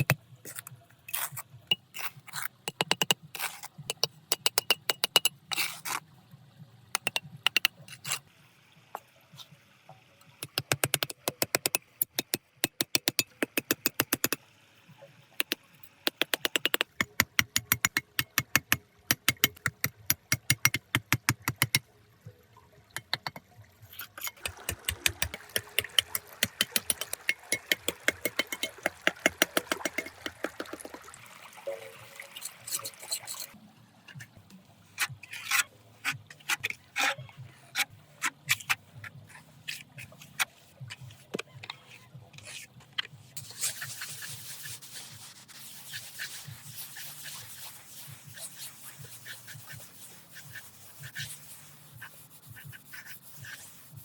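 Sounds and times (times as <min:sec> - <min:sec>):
running splashing water: 0:23.0 - 0:33.6.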